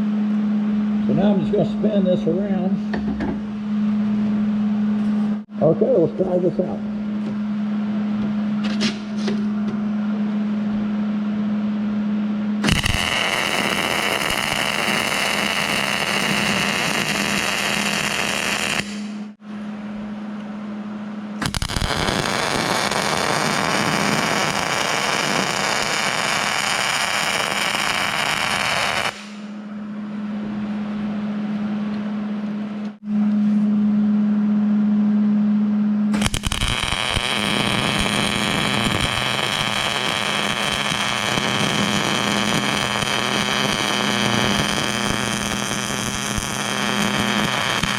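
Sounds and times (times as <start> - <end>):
steady low hum: 0.0 - 47.9
welding arc crackling: 12.6 - 19.4, 21.4 - 29.6, 36.2 - 47.9.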